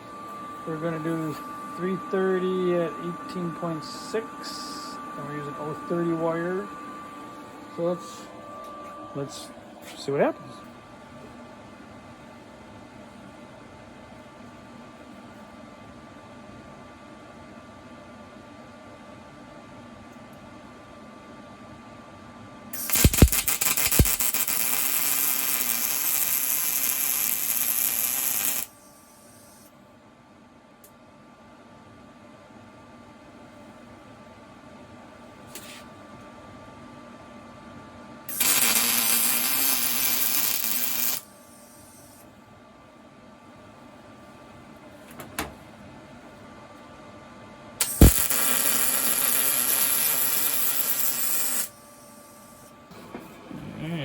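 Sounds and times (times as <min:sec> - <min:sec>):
welder arc thump: 0:22.8 - 0:24.6, 0:47.8 - 0:50.2
welding arc crackling hiss: 0:22.8 - 0:29.6, 0:38.3 - 0:42.2, 0:47.8 - 0:52.7.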